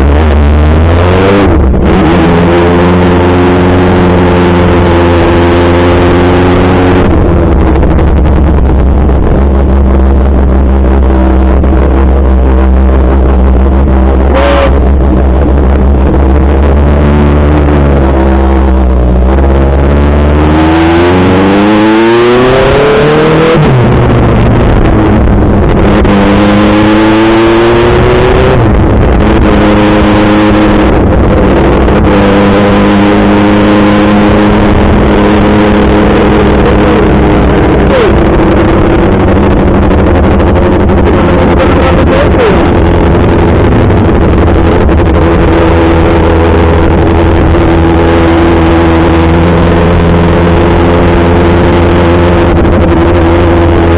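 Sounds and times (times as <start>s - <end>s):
motorcycle engine accelerating: 0.0s - 53.9s.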